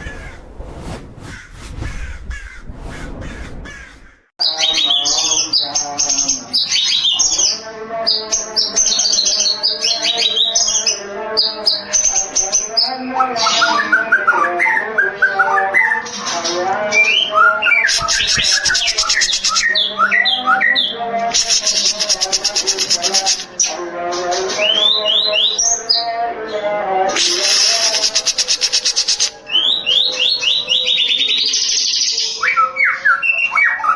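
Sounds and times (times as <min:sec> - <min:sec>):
songbird whistling and chattering: 0:17.0 - 0:20.4, 0:21.3 - 0:23.6, 0:27.1 - 0:33.9.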